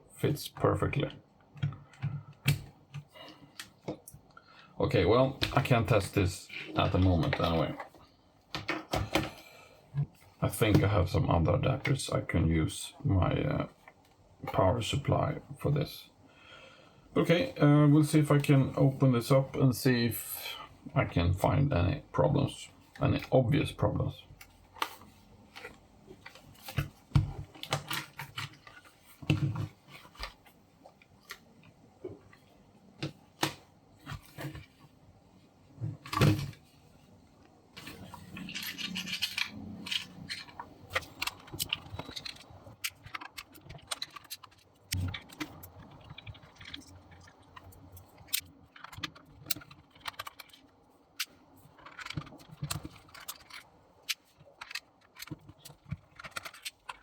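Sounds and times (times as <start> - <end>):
rubbing and scraping: 37.8 - 57.0.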